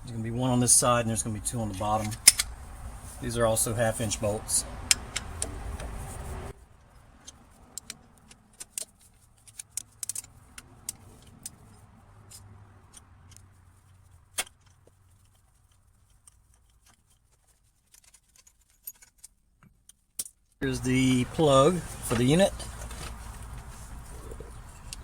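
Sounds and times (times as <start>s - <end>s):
metallic clicks of wrench and tools: 2.0s - 2.5s, 7.2s - 17.2s.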